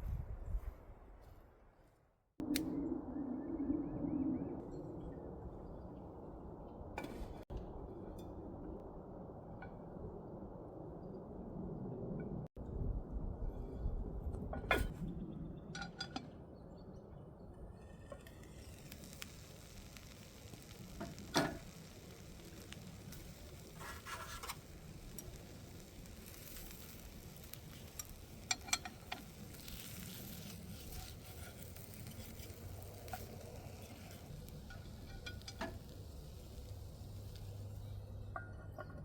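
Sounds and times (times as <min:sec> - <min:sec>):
food sizzling in a pan: 0:18.4 - 0:37.5.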